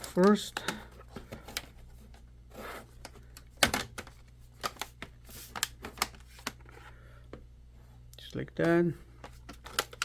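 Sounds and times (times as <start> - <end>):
plastic cover clicks and scraping: 2.9 - 6.8, 9.2 - 10.0.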